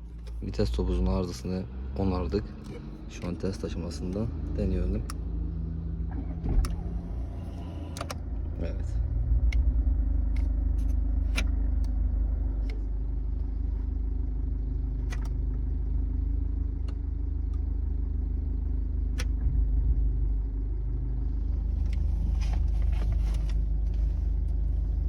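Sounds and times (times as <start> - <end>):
car engine idling: 0.0 - 25.0
gear selector clicks: 4.9 - 5.2, 10.3 - 12.0, 15.0 - 15.4, 19.1 - 19.4.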